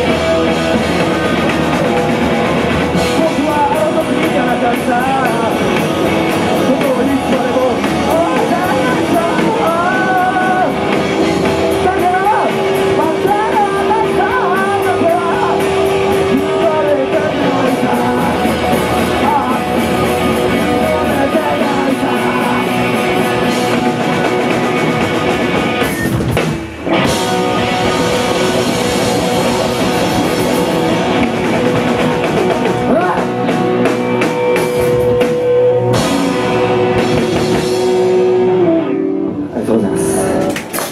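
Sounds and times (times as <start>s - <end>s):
person singing: 0.0s - 24.4s
rock band playing: 0.0s - 40.9s.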